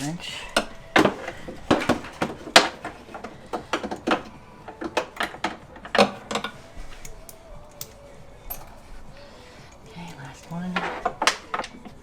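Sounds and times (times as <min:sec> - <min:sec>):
wrench clicking on nuts: 0:02.9 - 0:08.8.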